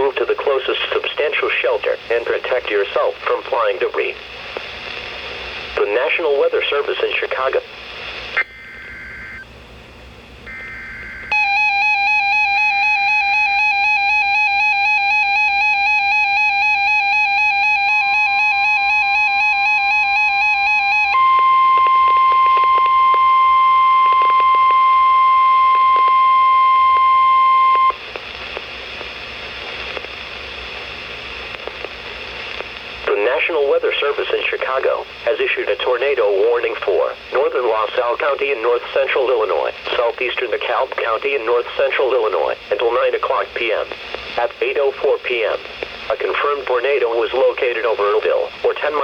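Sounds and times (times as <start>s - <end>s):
radio static: 0.0s - 9.5s, 10.5s - 11.8s, 13.3s - 49.0s
steady warning tone: 10.4s - 28.0s.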